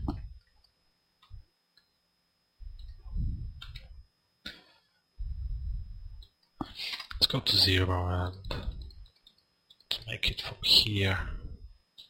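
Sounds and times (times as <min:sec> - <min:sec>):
low muffled noise swells: 0:05.2 - 0:09.1
computer clicks: 0:06.2 - 0:10.1.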